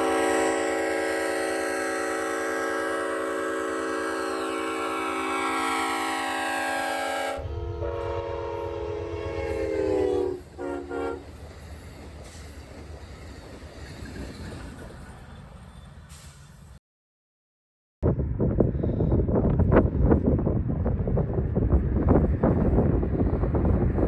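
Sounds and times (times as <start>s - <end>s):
distant locomotive horn blasts: 0.0s - 11.4s
passing train rumble: 0.0s - 16.8s, 18.0s - 24.0s
wind on microphone: 18.0s - 24.0s.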